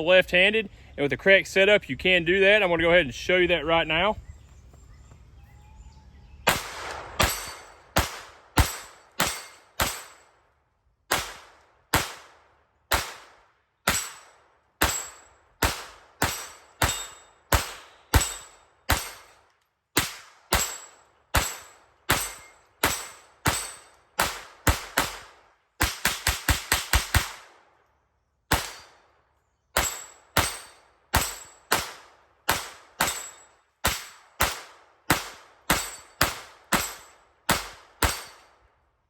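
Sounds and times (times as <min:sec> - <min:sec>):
pistol shots with echo: 0:06.5 - 0:10.4, 0:11.1 - 0:19.4, 0:20.0 - 0:27.8, 0:28.5 - 0:29.2, 0:29.8 - 0:38.5.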